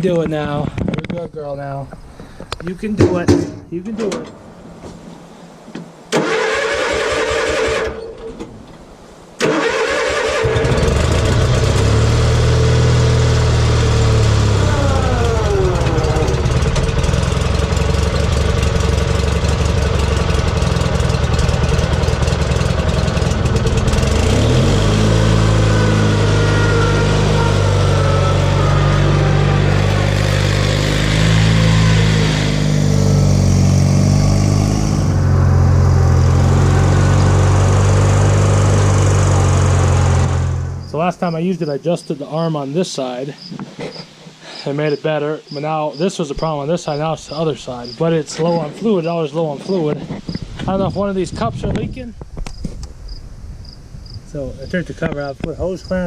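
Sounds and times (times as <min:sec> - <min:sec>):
lawn mower engine starting: 0:06.1 - 0:08.8, 0:09.4 - 0:41.1
high engine whine: 0:09.4 - 0:41.8.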